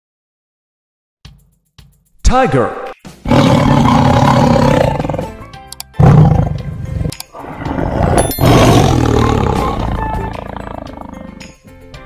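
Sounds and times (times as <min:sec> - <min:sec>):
tiger roaring: 0:03.2 - 0:05.4, 0:06.0 - 0:11.4.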